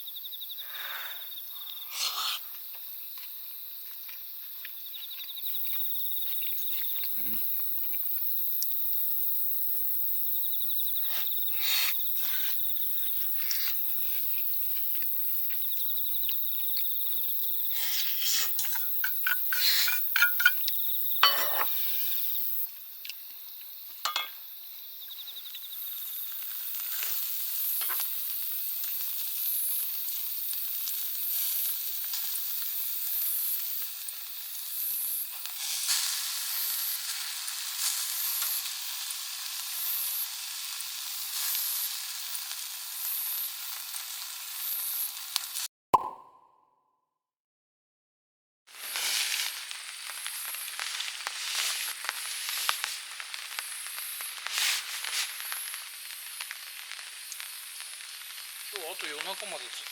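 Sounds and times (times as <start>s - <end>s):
food sizzling in a pan: 0.0s - 45.7s, 48.7s - 59.9s
sharp pops: 46.0s - 46.7s, 48.8s - 59.9s.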